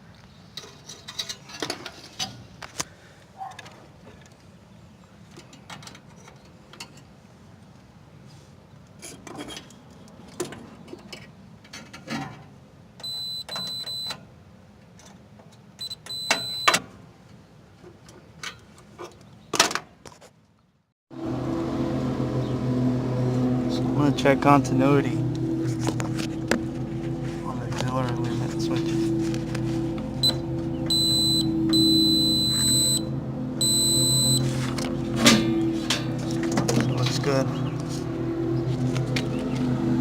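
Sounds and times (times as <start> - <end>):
multimeter beeping: 13.0 - 14.2, 15.8 - 16.8, 30.2 - 34.5.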